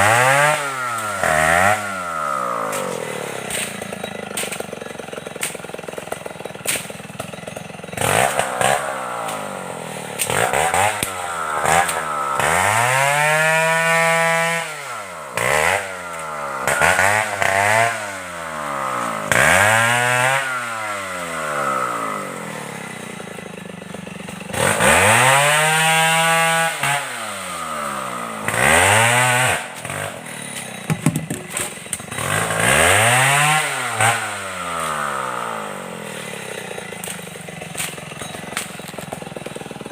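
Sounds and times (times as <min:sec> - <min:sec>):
chainsaw revving: 0:00.0 - 0:39.9.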